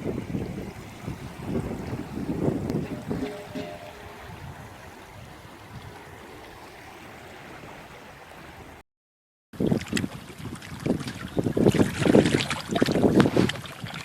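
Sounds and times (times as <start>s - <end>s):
wind buffeting microphone: 0.0s - 8.7s, 9.6s - 14.0s
flowing river water hiss: 0.0s - 8.8s.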